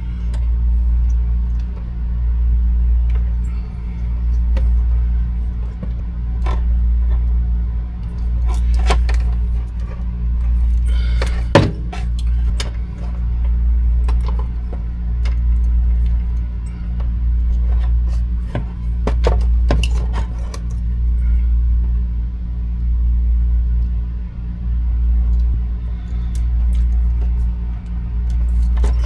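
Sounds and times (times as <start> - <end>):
low machine hum: 0.0 - 29.0
tools clicking and clattering: 8.0 - 20.9, 26.0 - 29.0.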